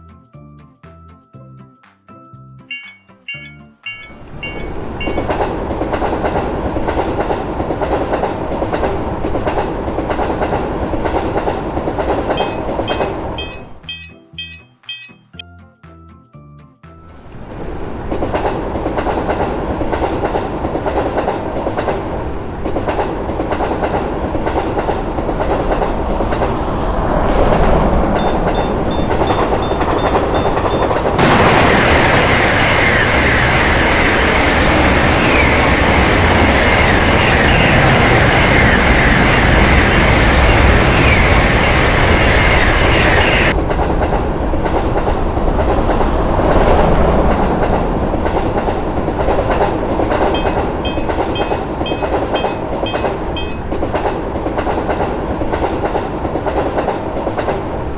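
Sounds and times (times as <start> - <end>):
loud high-pitched tone: 2.7 - 5.5, 12.3 - 15.4
train rumbling: 2.7 - 15.1, 17.2 - 57.9
wheels clacking over rail joints: 2.7 - 15.1, 17.3 - 57.9.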